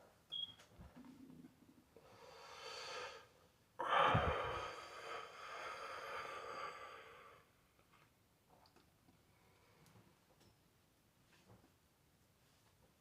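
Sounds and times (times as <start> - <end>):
person exhaling smoke: 2.0 - 7.5
person inhaling smoke: 2.0 - 7.5.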